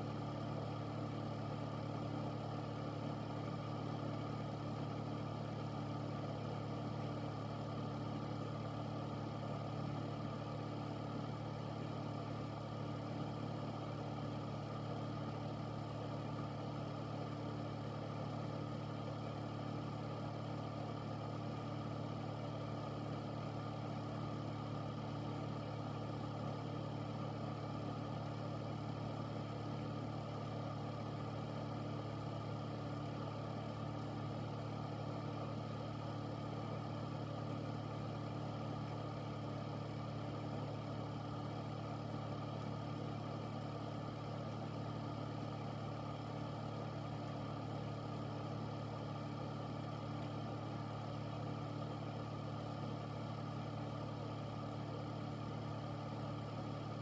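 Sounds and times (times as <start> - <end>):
air filter fan running: 0.0 - 57.0.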